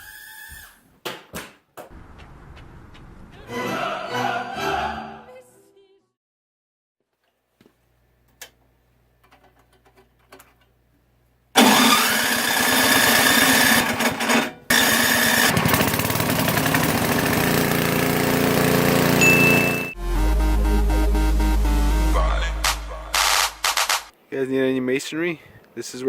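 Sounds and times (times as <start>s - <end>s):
motor running loudly: 14.7s - 20.0s.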